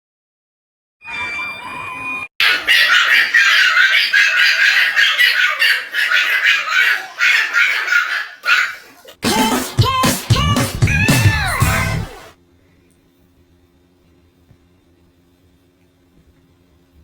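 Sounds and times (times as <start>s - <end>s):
birds squawking and chattering: 2.4s - 9.0s.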